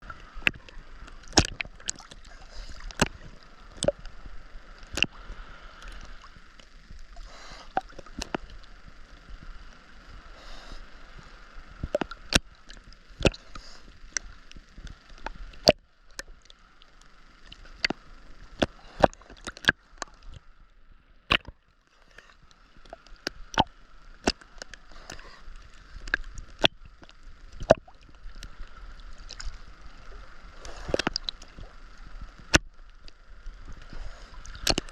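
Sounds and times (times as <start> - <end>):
water sloshing and splashing: 0.0 - 4.1, 11.8 - 20.5, 21.3 - 32.7
steady hiss: 0.0 - 21.2, 21.8 - 34.9
sharp irregular clicks and knocks: 21.3 - 21.6, 34.5 - 34.9.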